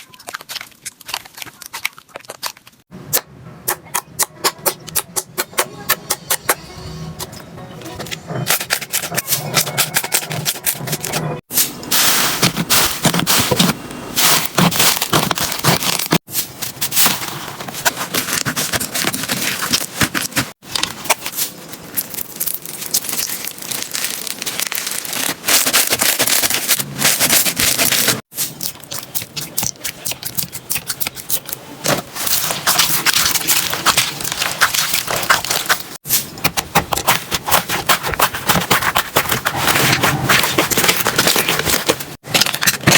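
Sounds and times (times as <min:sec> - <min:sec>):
slime crackling and popping: 0:18.1 - 0:31.6.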